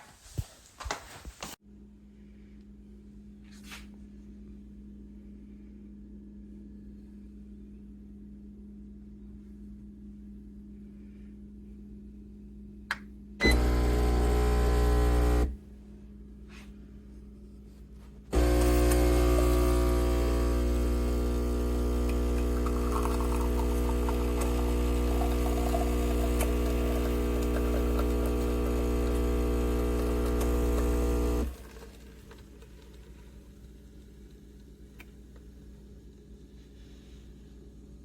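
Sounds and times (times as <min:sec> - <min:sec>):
espresso machine pump buzzing: 0:13.4 - 0:15.6, 0:18.3 - 0:31.9.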